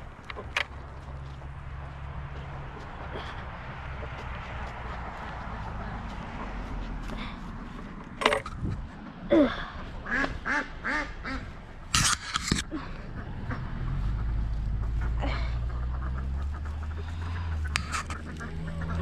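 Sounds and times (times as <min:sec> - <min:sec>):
ducks quacking: 0:08.3 - 0:19.0
low steady rumble: 0:12.6 - 0:19.0.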